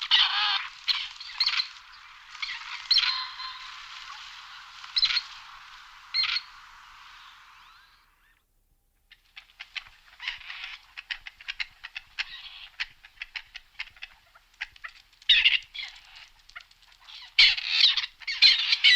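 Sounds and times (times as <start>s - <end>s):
partridges calling: 0.0s - 8.4s, 17.0s - 18.9s.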